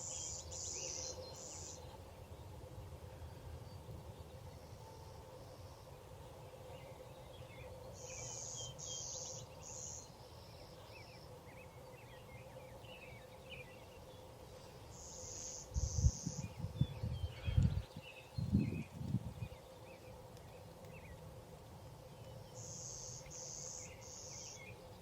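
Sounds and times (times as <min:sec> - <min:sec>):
small birds chirping: 0:07.1 - 0:21.2, 0:22.0 - 0:25.0
high buzzy bird calls: 0:14.6 - 0:21.1.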